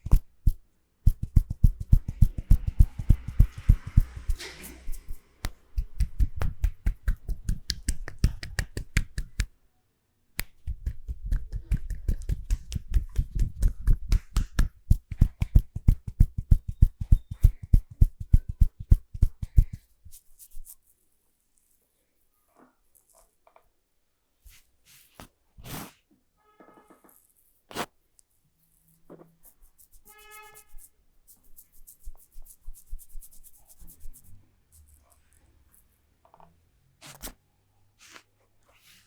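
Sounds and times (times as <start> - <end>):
hands striking the body: 5.4 - 9.5, 10.4 - 16.0.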